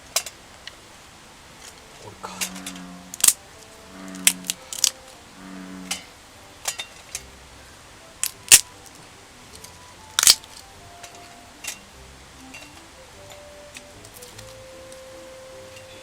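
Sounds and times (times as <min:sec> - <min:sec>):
kindling sticks snapping: 0:01.6 - 0:05.2, 0:05.9 - 0:07.4, 0:08.2 - 0:15.1.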